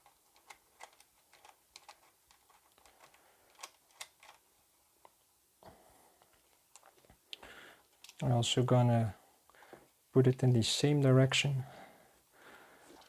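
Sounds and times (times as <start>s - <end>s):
small clicks: 0.0s - 4.4s.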